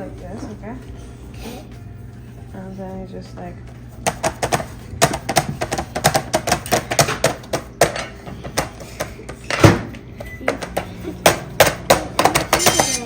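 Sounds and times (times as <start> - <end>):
tapping on a hard surface: 4.0 - 9.4, 10.5 - 13.0.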